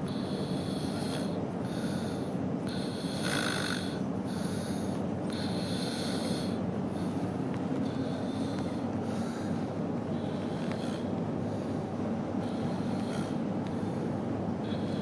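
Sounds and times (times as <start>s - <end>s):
man snoring: 2.7s - 4.0s.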